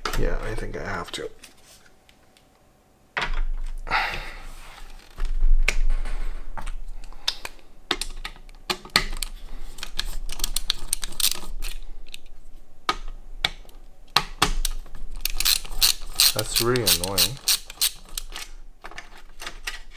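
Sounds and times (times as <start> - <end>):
cables and plastic connectors rattling: 14.4 - 19.9.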